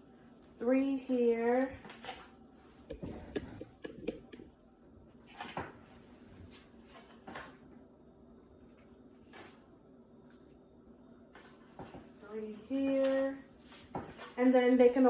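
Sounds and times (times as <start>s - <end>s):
small knocks and clicks of plates: 2.8s - 4.5s.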